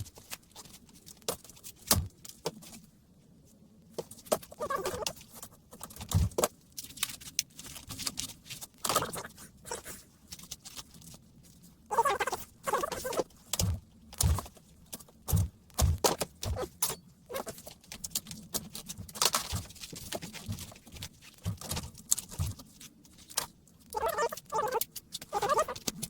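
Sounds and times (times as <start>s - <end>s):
plastic crackling: 0.0s - 2.9s, 3.8s - 26.0s.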